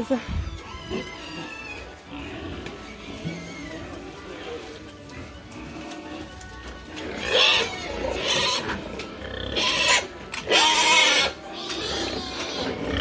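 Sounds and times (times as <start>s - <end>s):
pigs squealing: 0.0s - 4.8s, 6.9s - 13.0s.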